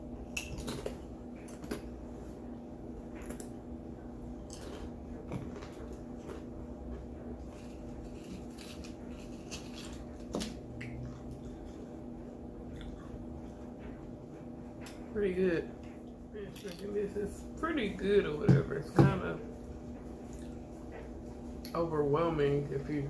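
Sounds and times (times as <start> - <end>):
crunching chips: 4.4 - 6.5, 7.4 - 11.7.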